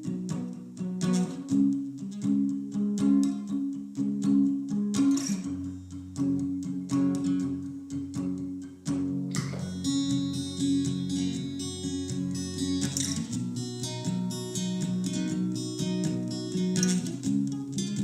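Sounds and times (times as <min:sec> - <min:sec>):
acoustic guitar strumming: 0:00.0 - 0:18.0.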